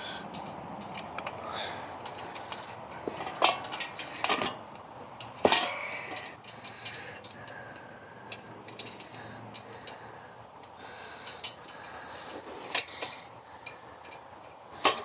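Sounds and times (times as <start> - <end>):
metal parts clinking and knocking: 0.0 - 7.5, 10.6 - 15.0.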